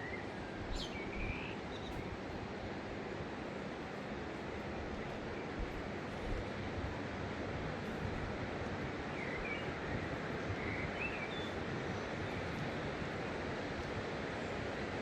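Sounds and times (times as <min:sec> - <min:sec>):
rushing outdoor background noise: 0:00.0 - 0:15.0.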